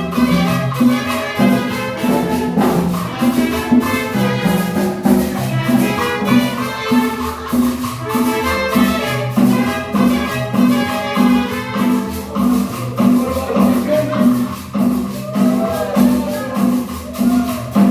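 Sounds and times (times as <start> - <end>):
upbeat salsa dance music: 0.0 - 17.9.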